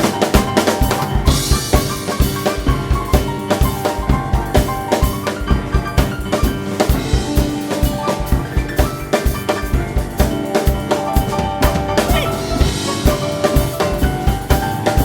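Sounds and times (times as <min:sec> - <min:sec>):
heavy fast drumming: 0:00.0 - 0:15.0.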